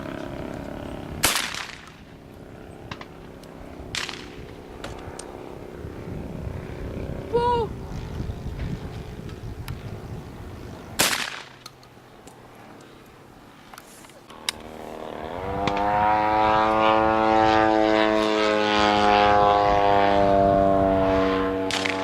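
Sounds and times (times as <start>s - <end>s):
engine drone: 0.0s - 22.0s
shotgun shot: 1.2s - 2.0s, 3.9s - 4.4s, 11.0s - 11.6s, 21.7s - 22.0s.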